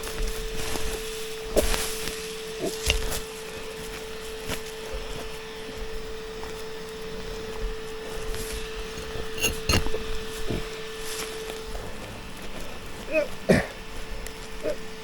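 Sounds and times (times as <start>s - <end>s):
steady high hum: 5.1s - 13.0s.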